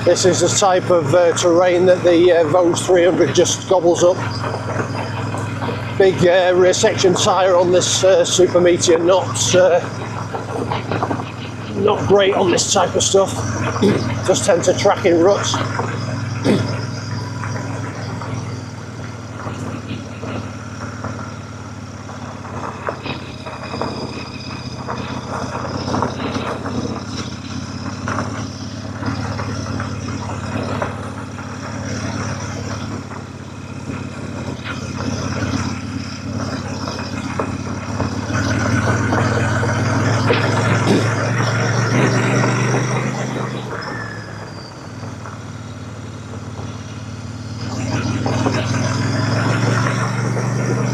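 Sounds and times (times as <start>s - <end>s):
motorcycle engine running: 0.0s - 50.9s.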